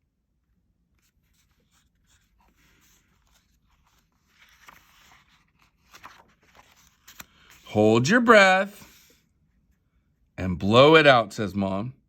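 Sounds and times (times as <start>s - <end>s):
paper rustling: 0.8s - 9.1s.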